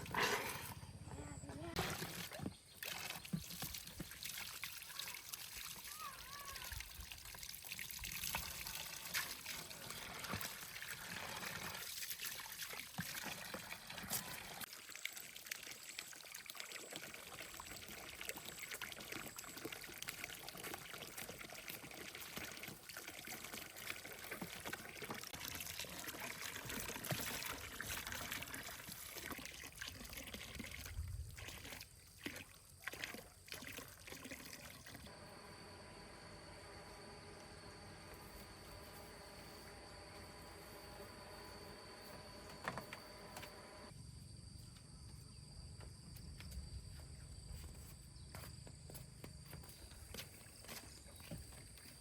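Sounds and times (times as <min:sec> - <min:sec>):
water trickling and pouring: 0:01.8 - 0:35.1.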